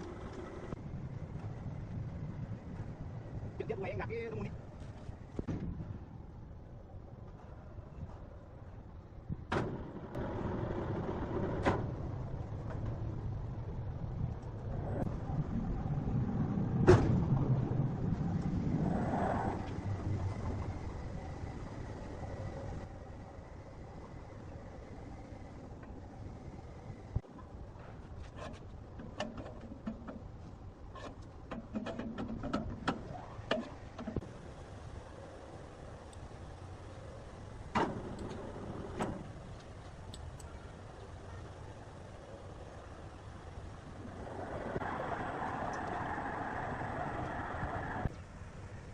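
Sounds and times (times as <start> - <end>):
low steady rumble: 0.0 - 48.9.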